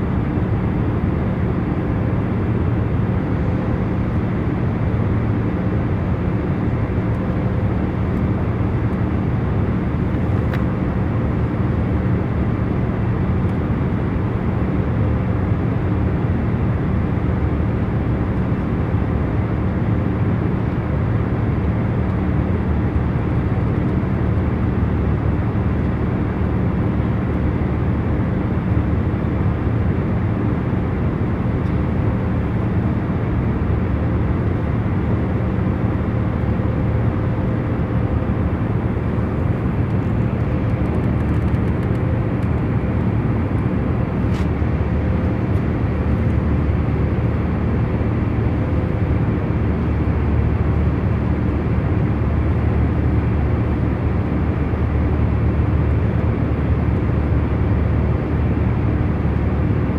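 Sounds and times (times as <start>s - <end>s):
airliner cabin drone: 0.0s - 59.9s
faint constant hum tones: 0.0s - 59.9s.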